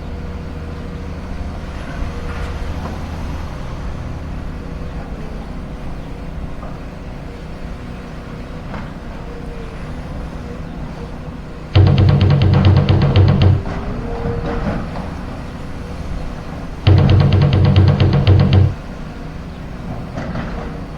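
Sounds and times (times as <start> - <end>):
faint knocks: 11.8 - 13.8, 16.9 - 18.8
steady tone: 11.8 - 13.9, 16.9 - 18.8.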